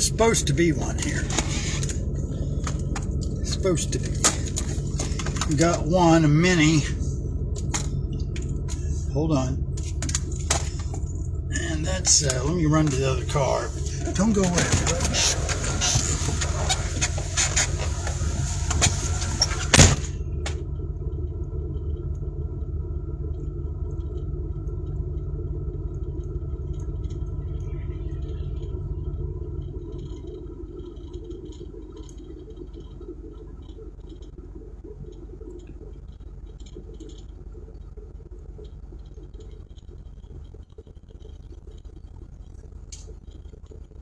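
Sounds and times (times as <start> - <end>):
car engine idling: 0.0 - 44.0
car door slamming: 11.6 - 20.6.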